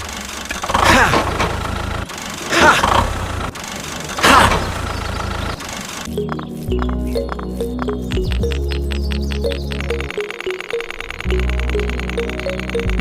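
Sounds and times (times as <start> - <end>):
engine running with surges: 0.0 - 6.4, 7.1 - 13.0
music: 6.1 - 13.0.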